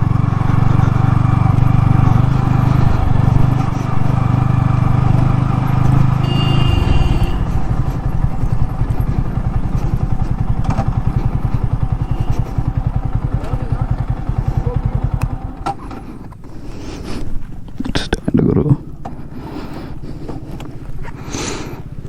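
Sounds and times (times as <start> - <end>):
motorcycle engine running: 0.0 - 17.8, 18.7 - 22.0.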